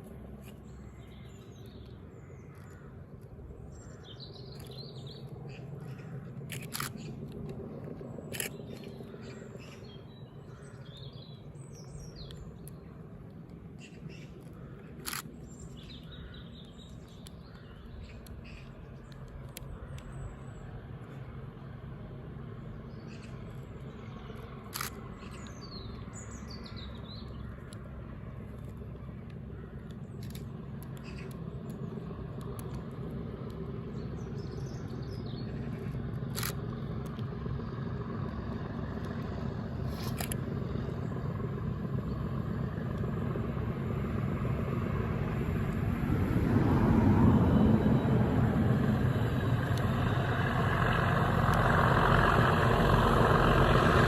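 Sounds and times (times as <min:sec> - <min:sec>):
sharp clicks: 0:00.0 - 0:09.9, 0:11.8 - 0:20.4, 0:24.2 - 0:41.0
birds chirping: 0:00.0 - 0:53.8
diesel locomotive engines rumbling: 0:00.0 - 0:54.0.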